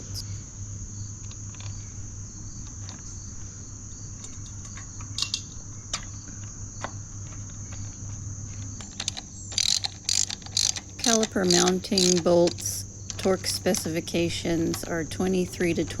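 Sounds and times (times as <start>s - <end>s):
crickets trilling: 0.0s - 16.0s
light clicks: 8.6s - 14.0s.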